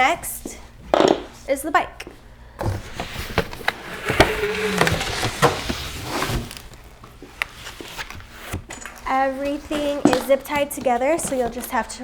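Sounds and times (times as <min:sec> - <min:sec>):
cardboard scraping and rustling: 0:02.6 - 0:12.0.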